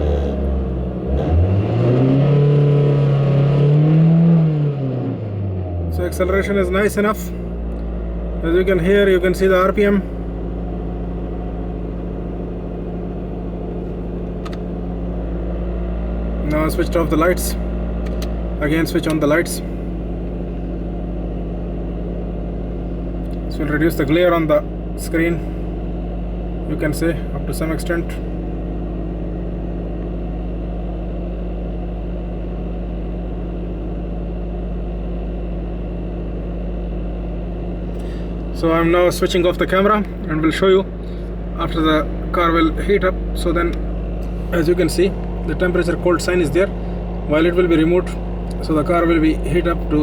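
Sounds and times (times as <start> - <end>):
car engine idling: 0.0 - 50.0
click: 14.4 - 14.6, 18.0 - 18.4.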